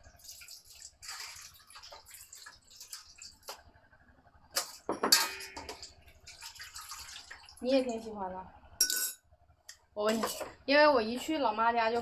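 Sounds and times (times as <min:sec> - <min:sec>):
dish clattering: 0:04.6 - 0:05.9.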